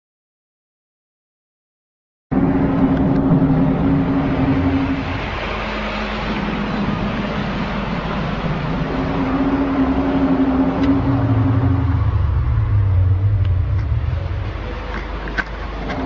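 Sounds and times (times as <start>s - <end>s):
low groaning drone: 2.3s - 16.0s
steady rumble: 2.3s - 16.0s.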